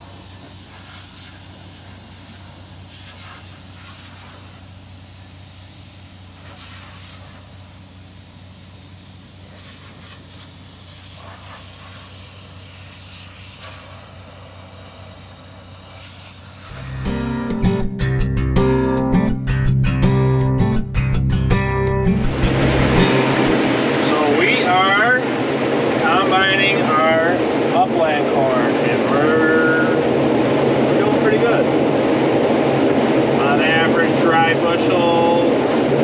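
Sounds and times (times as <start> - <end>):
engine humming with hiss: 0.0 - 25.2, 26.0 - 36.0.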